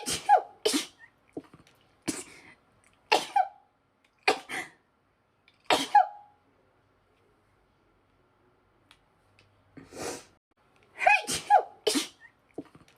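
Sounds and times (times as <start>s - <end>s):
person sneezing: 0.0s - 1.1s, 4.3s - 4.8s, 5.6s - 6.2s, 11.0s - 12.3s.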